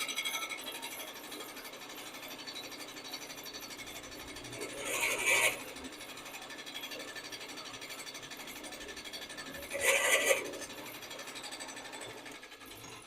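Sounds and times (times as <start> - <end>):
drill press motor hum: 1.9 - 6.3.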